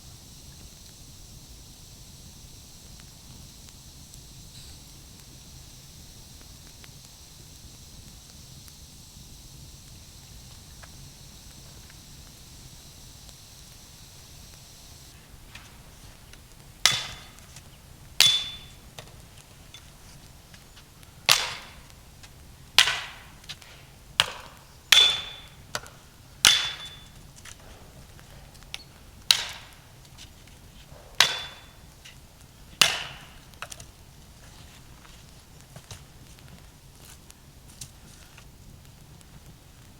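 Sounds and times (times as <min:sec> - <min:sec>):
metal tool striking wood: 0:16.8 - 0:17.4, 0:18.2 - 0:18.8, 0:21.3 - 0:21.8, 0:24.2 - 0:27.2, 0:29.3 - 0:29.8, 0:31.2 - 0:31.9, 0:32.8 - 0:33.8.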